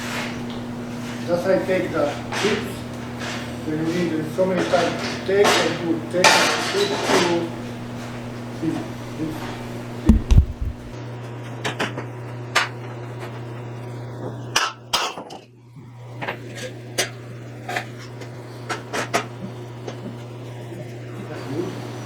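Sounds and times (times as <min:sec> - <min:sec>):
steady low hum: 0:00.0 - 0:11.0
heavy thumps: 0:08.9 - 0:11.0.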